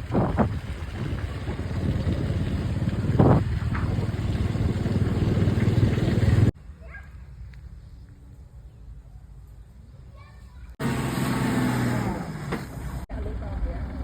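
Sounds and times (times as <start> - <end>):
engine running: 0.0 - 6.6, 10.8 - 14.0.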